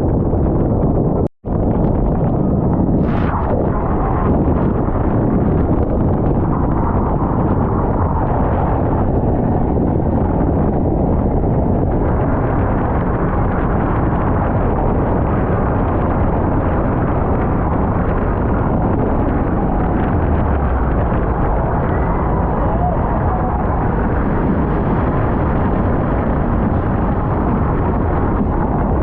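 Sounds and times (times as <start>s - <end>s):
wind buffeting microphone: 0.0s - 29.0s
speedboat engines rumbling: 17.0s - 29.0s.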